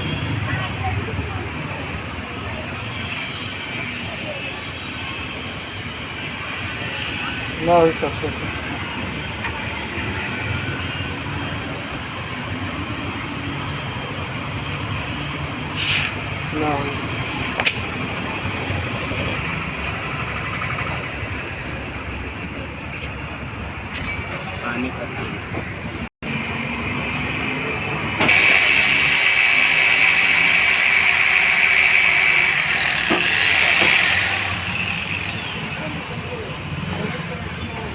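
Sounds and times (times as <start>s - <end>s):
engine humming: 0.0s - 24.4s, 25.2s - 37.9s
compressed air hissing: 2.2s - 5.3s, 6.2s - 12.0s, 14.5s - 18.0s, 28.3s - 37.9s.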